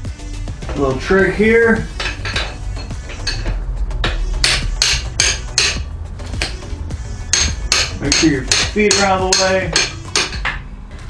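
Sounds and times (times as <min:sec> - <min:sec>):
hammer striking metal: 0:01.9 - 0:06.6, 0:07.2 - 0:10.6.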